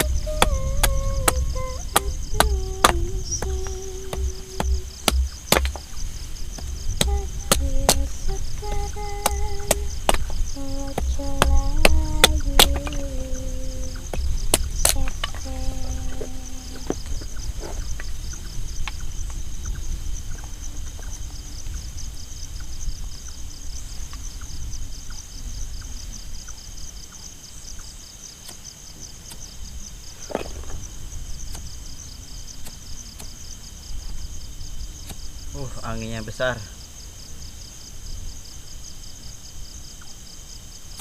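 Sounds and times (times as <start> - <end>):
wind buffeting microphone: 0.0 - 27.1
crickets or cicadas chorus: 0.0 - 41.0.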